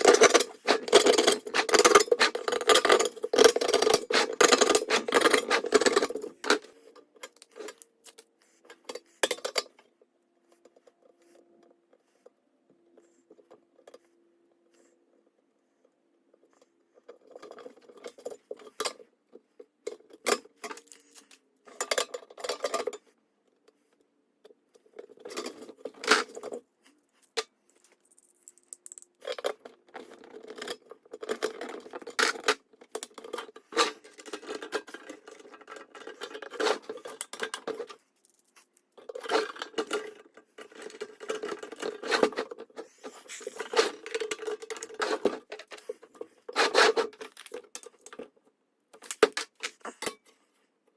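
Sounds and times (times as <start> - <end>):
small hard parts clinking and rattling: 0.0 - 9.8, 27.2 - 48.4.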